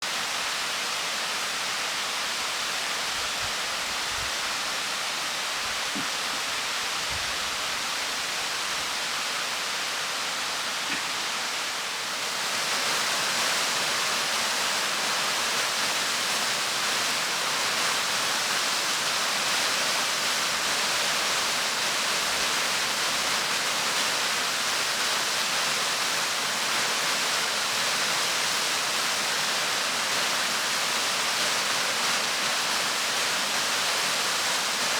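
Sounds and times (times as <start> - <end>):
waterfall rushing: 0.1 - 34.9.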